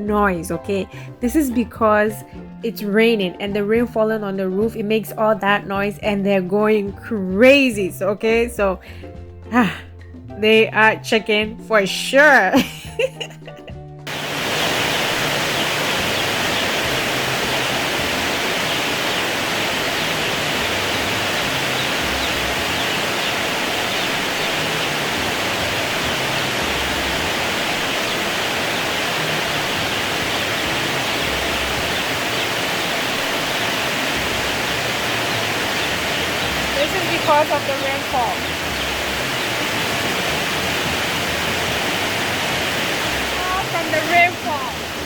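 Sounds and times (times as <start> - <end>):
rain on a roof: 14.1 - 45.0.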